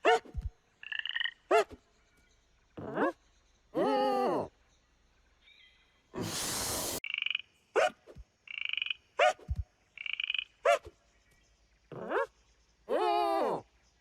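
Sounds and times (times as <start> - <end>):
burst of noise: 6.2 - 7.0.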